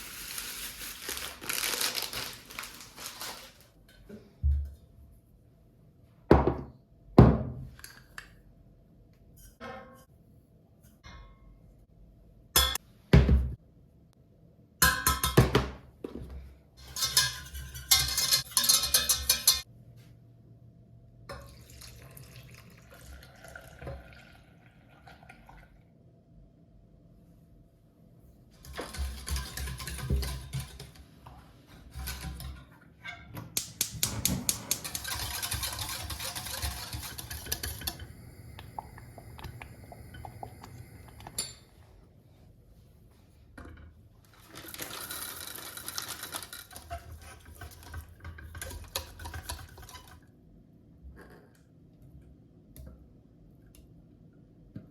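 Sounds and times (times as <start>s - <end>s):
dishes and utensils handled: 16.8s - 19.7s, 28.6s - 31.0s, 31.7s - 38.2s.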